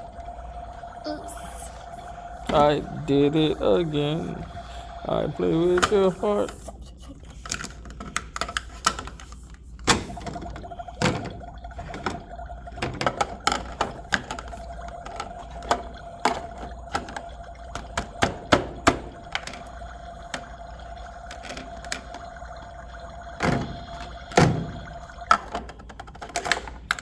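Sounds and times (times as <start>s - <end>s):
faint steady hum: 0.0s - 27.0s
objects knocking and clattering: 25.3s - 27.0s.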